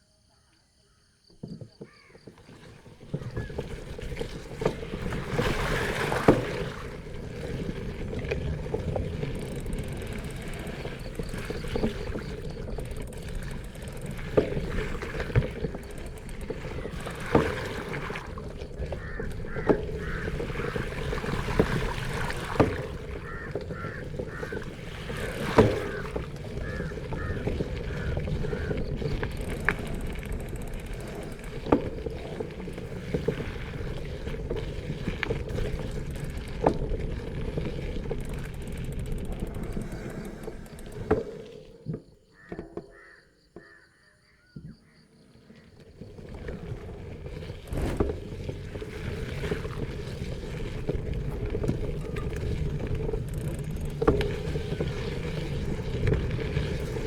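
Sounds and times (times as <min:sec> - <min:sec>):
wind: 0:00.0 - 0:57.0
bicycle tyres on road: 0:01.4 - 0:43.8, 0:44.9 - 0:57.0
crows cawing: 0:01.9 - 0:02.2, 0:18.9 - 0:21.0, 0:23.1 - 0:28.9, 0:42.3 - 0:45.0.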